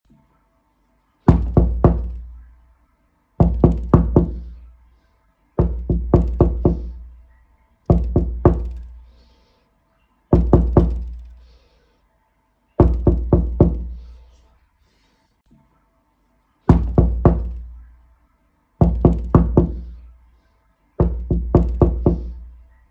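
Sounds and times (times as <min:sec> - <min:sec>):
knocking on a door: 0:01.3 - 0:02.4, 0:03.4 - 0:04.6, 0:05.6 - 0:07.1, 0:07.9 - 0:09.0, 0:10.4 - 0:11.3, 0:12.8 - 0:14.0, 0:16.7 - 0:17.8, 0:18.8 - 0:20.0, 0:21.0 - 0:22.5.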